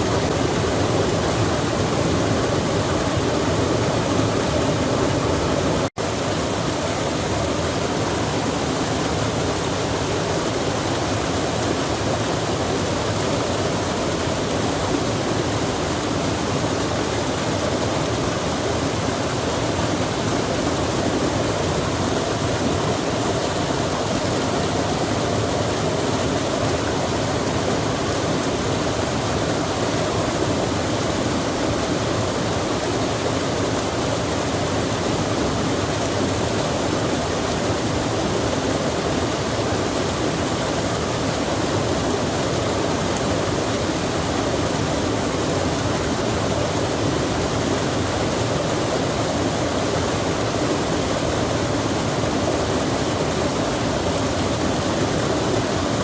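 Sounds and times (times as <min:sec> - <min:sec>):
rush of flowing water: 0:00.0 - 0:56.0.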